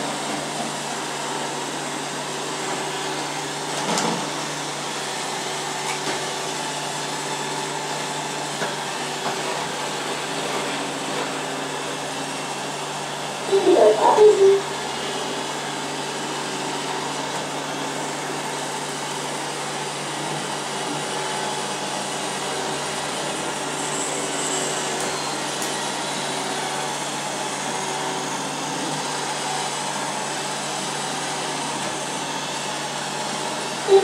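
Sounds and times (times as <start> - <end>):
robot vacuum whirring: 13.5 - 14.8.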